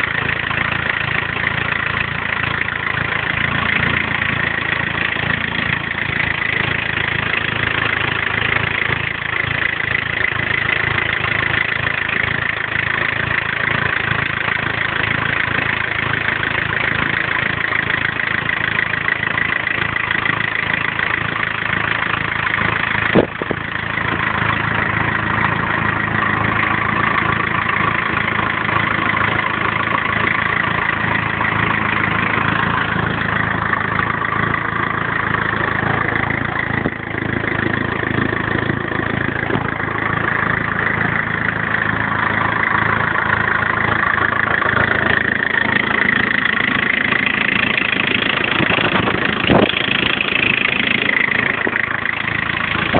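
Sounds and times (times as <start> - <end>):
diesel engine idling: 0.0 - 52.9.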